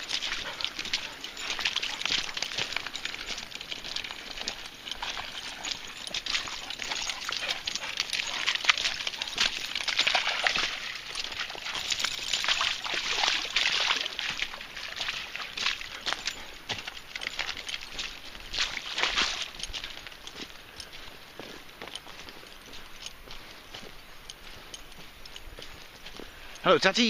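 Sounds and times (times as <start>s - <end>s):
dogs splashing in mud: 0.0s - 23.7s.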